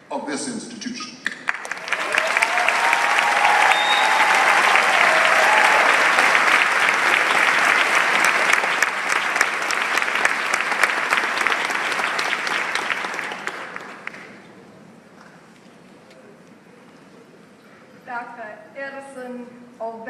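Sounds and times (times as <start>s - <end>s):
audience applauding: 1.4s - 14.5s.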